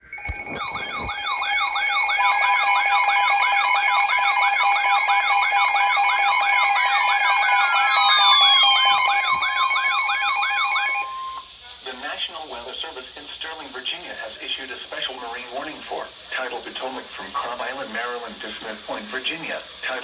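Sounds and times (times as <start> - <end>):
steady high beeps: 0.0 - 11.5
long falling whistle: 0.1 - 11.6
rising and falling siren wail: 0.3 - 11.4.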